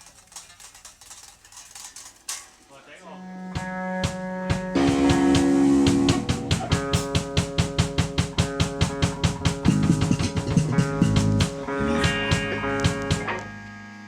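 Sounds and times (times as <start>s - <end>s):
guitar chords: 3.2s - 14.0s
drum kit fast beat: 3.6s - 13.5s.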